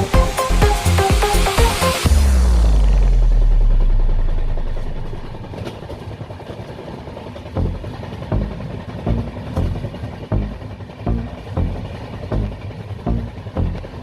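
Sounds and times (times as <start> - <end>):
deep bass music: 0.0 - 5.5, 7.5 - 14.0
moving vehicle rumble: 0.0 - 14.0
low thumps: 7.6 - 14.0.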